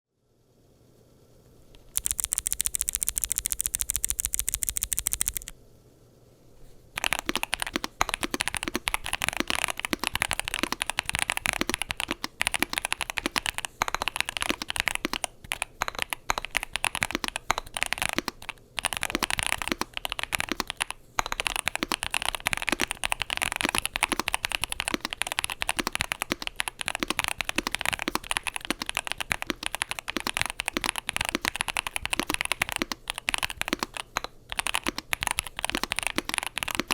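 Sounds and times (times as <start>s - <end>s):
mechanical keyboard typing: 1.8s - 5.5s, 7.0s - 36.9s
rapid even ticking: 1.8s - 5.5s, 7.0s - 36.9s.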